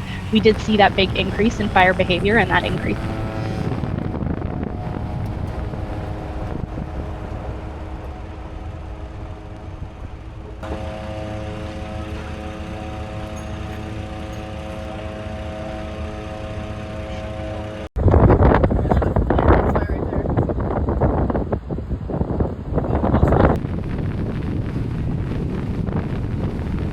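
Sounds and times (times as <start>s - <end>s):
vehicle engine and road drone: 0.0s - 17.9s
low rumble: 18.0s - 26.9s.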